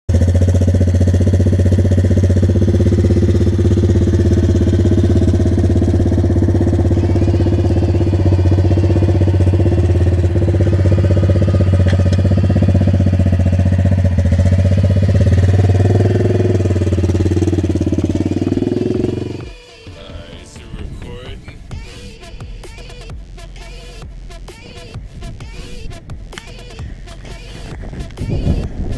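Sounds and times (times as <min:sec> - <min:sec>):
motorbike engine idling: 0:00.1 - 0:28.9.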